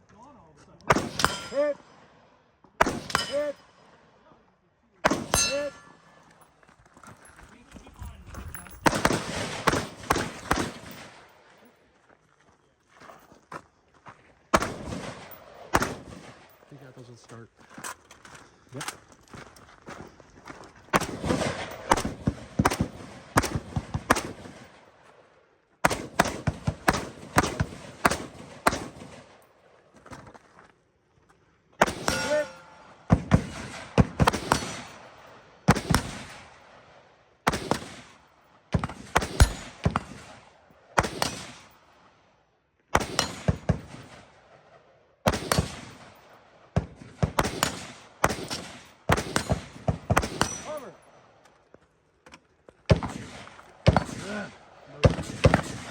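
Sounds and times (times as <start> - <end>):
gunshots with echo: 0.9 - 2.1, 2.8 - 3.9, 5.0 - 6.2, 8.6 - 11.3, 14.6 - 16.6, 20.9 - 24.8, 25.8 - 29.4, 31.8 - 36.8, 37.4 - 41.8, 43.0 - 44.4, 45.3 - 51.0, 52.9 - 55.9.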